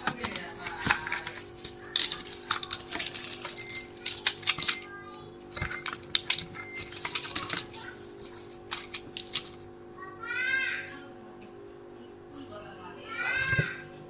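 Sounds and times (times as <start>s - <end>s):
small hard objects clattering: 0.0s - 4.9s, 5.5s - 9.6s
steady hum: 0.0s - 14.0s.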